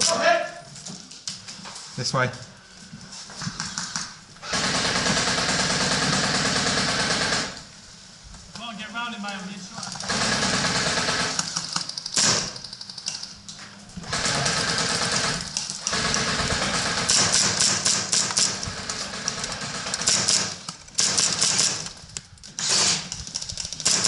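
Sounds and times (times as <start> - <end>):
airsoft guns firing bursts: 3.8 - 7.6, 10.0 - 13.2, 14.0 - 22.0, 22.6 - 24.0.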